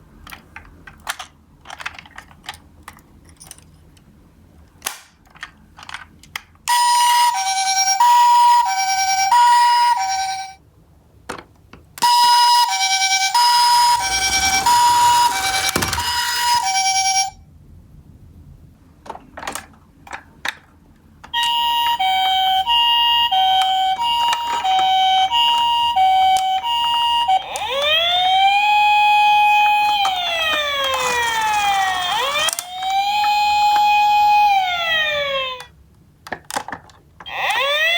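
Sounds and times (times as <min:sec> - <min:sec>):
toy two-tone siren: 0:06.7 - 0:10.6, 0:12.0 - 0:17.4, 0:21.4 - 0:35.7, 0:37.2 - 0:37.9
toy wailing siren: 0:06.7 - 0:10.6, 0:12.0 - 0:17.4, 0:21.4 - 0:35.7, 0:37.2 - 0:37.9.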